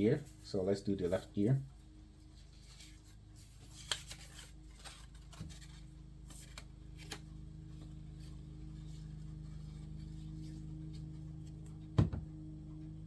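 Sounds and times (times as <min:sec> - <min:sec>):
steady low hum: 0:00.0 - 0:13.0
paper rustling: 0:02.2 - 0:11.1.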